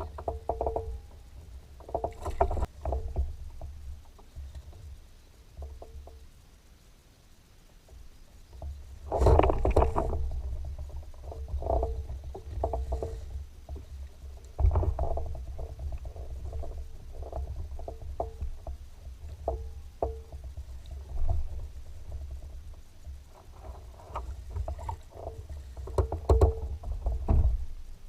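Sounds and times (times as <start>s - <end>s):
steady low rumble: 6.2s - 25.9s.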